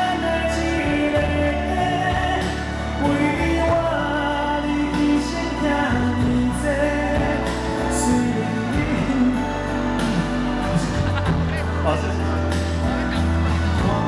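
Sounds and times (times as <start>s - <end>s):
man singing long held notes: 0.0s - 11.2s
live pop band playing: 0.0s - 14.0s.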